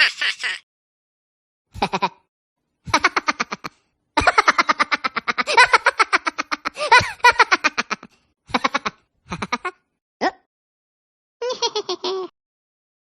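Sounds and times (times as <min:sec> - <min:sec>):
cartoon giggling: 0:00.0 - 0:00.6, 0:01.8 - 0:02.3, 0:02.9 - 0:09.9, 0:11.4 - 0:12.3
high-pitched cartoon laughter: 0:00.0 - 0:00.6, 0:01.8 - 0:02.3, 0:02.9 - 0:09.9, 0:11.4 - 0:12.3.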